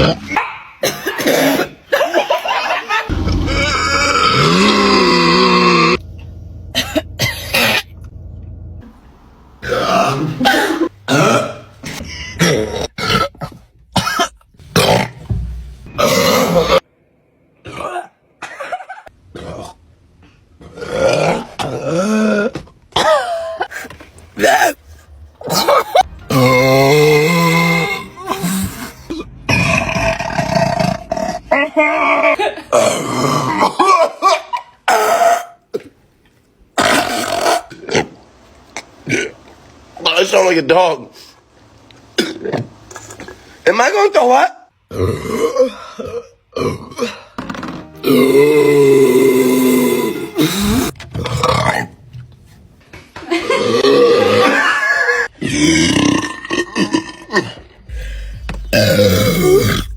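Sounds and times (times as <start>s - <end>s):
person coughing: 0.8s - 2.3s, 6.8s - 8.0s, 10.0s - 12.9s, 23.0s - 24.8s, 25.4s - 26.1s
person burping: 3.1s - 6.0s, 6.7s - 8.0s, 9.6s - 15.2s, 15.9s - 16.8s, 20.8s - 24.8s, 25.4s - 35.9s, 36.8s - 37.7s, 44.9s - 47.4s, 48.0s - 51.9s, 53.4s - 59.9s.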